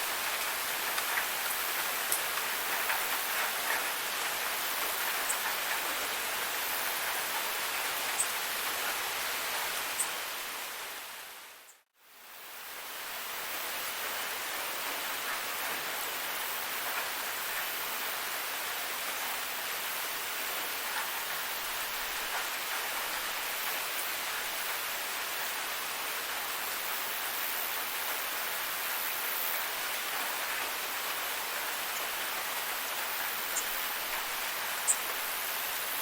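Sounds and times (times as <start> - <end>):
steady rain falling: 0.0 - 36.0
small tick: 0.4 - 3.8.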